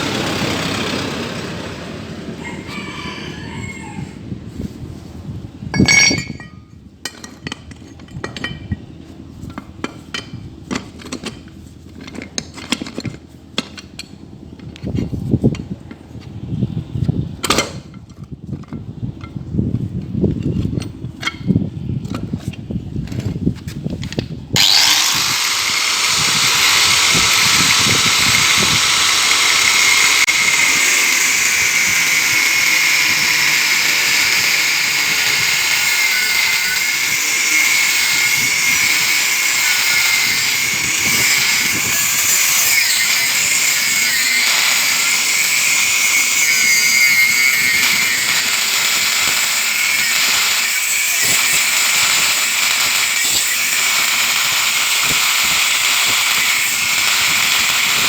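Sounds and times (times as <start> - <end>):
power tool whining on metal: 0.0 - 2.7, 24.6 - 58.0.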